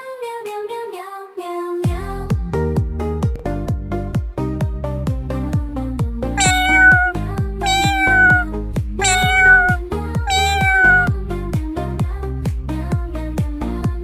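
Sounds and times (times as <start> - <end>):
electronic music with steady beat: 1.9 - 14.0
cat meowing: 6.4 - 11.1.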